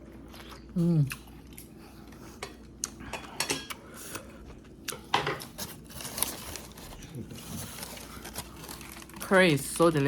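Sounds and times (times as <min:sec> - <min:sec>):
metal utensils clinking on dishes: 0:02.4 - 0:03.8.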